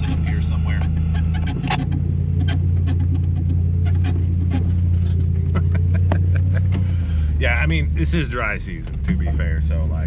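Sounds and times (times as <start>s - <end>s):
vehicle jolting clicks and knocks: 0.0s - 7.0s
vehicle engine droning: 0.0s - 10.0s.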